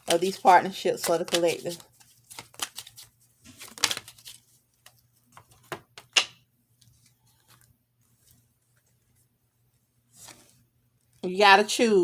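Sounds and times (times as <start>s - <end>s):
cards flicking and rustling: 0.0s - 7.7s.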